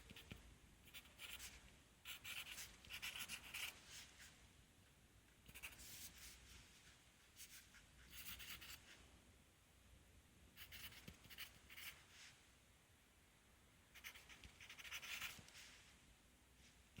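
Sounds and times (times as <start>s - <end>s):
pencil writing on paper: 2.1s - 3.7s, 5.5s - 5.8s, 14.0s - 15.4s.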